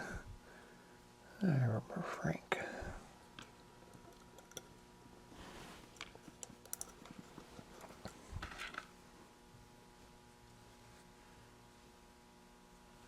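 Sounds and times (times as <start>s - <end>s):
soft rustles of parts and tools: 3.2s - 12.0s
light clicks of small parts: 5.9s - 8.9s.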